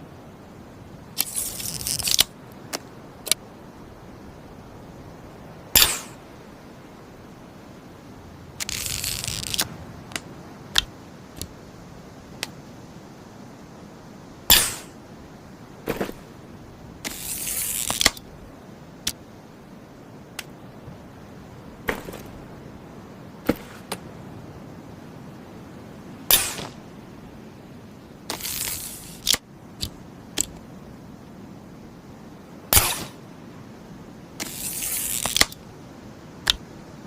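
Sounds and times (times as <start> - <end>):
crossbow snaps and clicks: 8.6 - 11.5, 17.0 - 18.2, 28.3 - 30.6, 34.4 - 35.6, 36.4 - 36.6.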